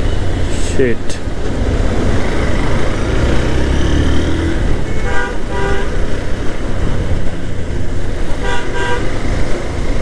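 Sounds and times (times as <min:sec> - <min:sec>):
traffic rumble: 0:00.0 - 0:10.0
vehicle horn toots: 0:04.9 - 0:06.0, 0:08.4 - 0:09.1.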